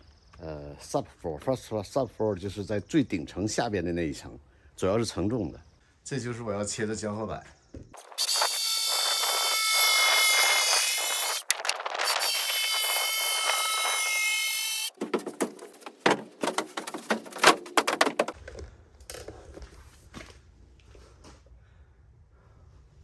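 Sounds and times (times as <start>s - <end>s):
power saw cutting wood: 8.0s - 15.0s
knocks and clatters: 14.9s - 18.6s.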